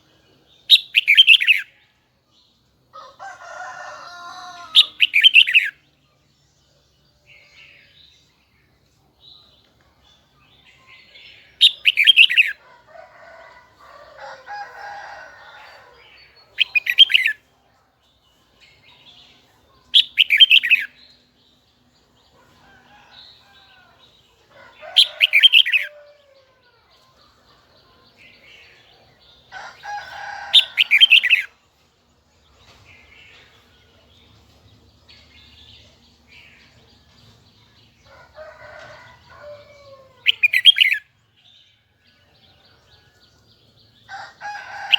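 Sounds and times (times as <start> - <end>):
bird warbling song: 38.8 - 41.6.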